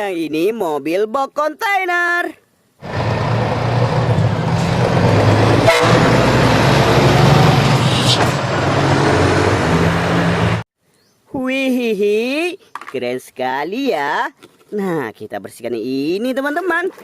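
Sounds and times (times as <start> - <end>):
truck engine running loudly: 2.8 - 10.6.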